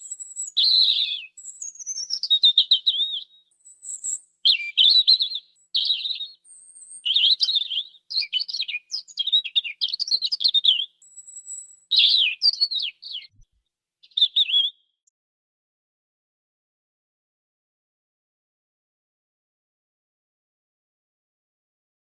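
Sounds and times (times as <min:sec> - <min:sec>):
robin singing: 0:00.0 - 0:13.4, 0:14.0 - 0:14.8.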